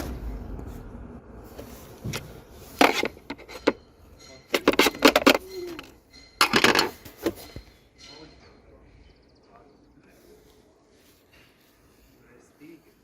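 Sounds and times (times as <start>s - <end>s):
hard objects clattering: 2.0s - 8.3s.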